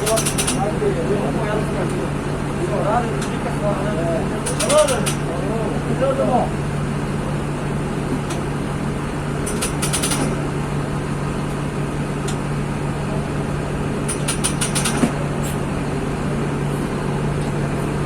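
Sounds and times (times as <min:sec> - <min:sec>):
rattling clicks: 0:00.0 - 0:00.6, 0:04.4 - 0:05.7, 0:06.5 - 0:10.4, 0:14.1 - 0:15.6
diesel engine humming: 0:00.0 - 0:17.8.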